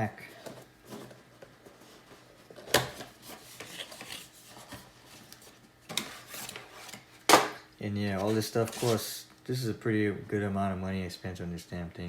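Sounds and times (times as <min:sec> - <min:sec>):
hands rubbing and scraping parts: 0:08.1 - 0:09.1.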